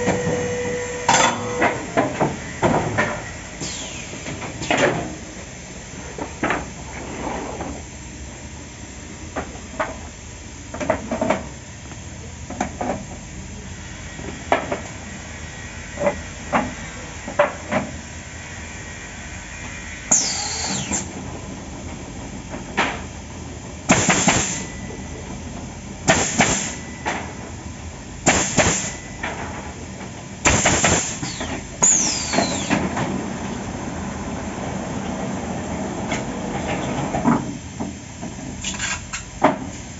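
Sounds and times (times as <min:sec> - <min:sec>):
loud hissing blasts: 0:19.2 - 0:21.2, 0:26.1 - 0:26.8, 0:28.2 - 0:28.9, 0:30.4 - 0:32.8.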